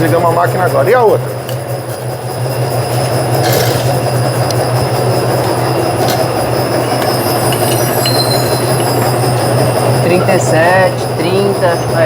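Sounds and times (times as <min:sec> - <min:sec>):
suspension rattling: 0:00.0 - 0:09.9
machine humming: 0:00.0 - 0:11.4.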